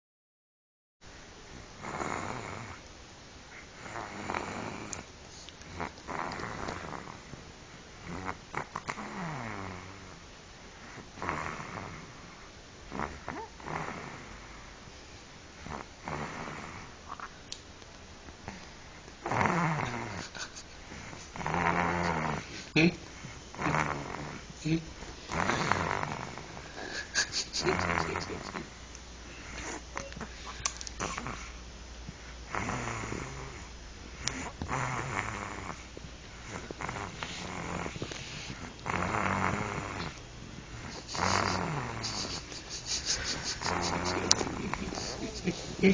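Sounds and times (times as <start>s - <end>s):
person snoring: 19.2s - 28.7s, 32.5s - 35.8s, 36.4s - 40.2s, 40.8s - 45.9s.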